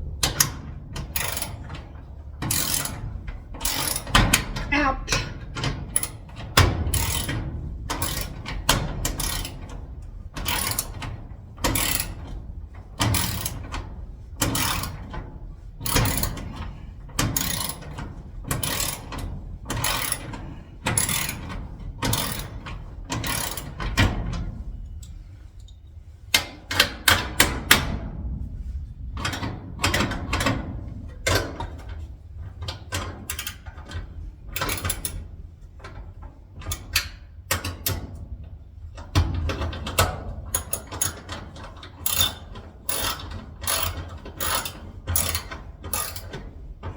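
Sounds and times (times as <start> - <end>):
ratcheting screwdriver clicking: 1.2 - 1.6, 3.7 - 4.1, 42.1 - 46.4.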